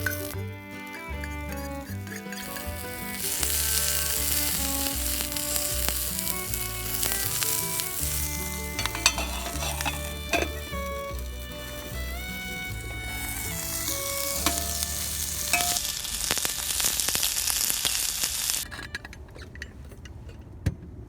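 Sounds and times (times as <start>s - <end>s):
background music: 0.0s - 15.8s
food sizzling in hot oil: 0.0s - 18.6s.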